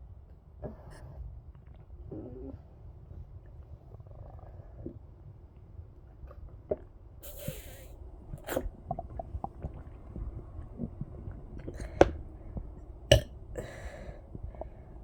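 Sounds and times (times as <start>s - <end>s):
stomach gurgling: 1.4s - 15.0s.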